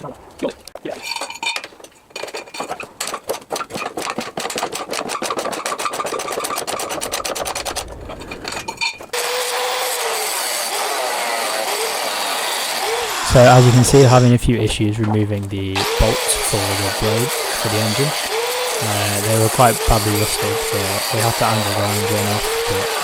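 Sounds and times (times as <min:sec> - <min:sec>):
power tool running: 0:09.2 - 0:14.4, 0:15.8 - 0:23.0.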